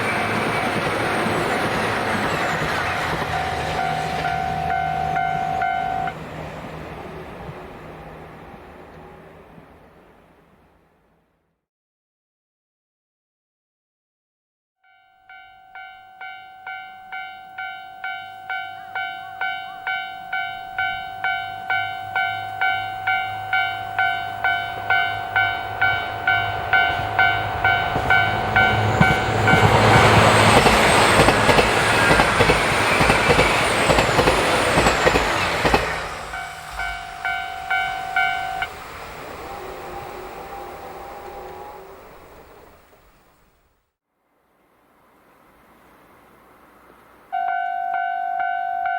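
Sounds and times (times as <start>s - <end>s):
diesel train passing: 0.0s - 11.5s, 15.3s - 43.6s, 44.3s - 48.9s
level crossing bell dinging: 3.4s - 6.1s, 14.8s - 29.6s, 36.4s - 38.7s.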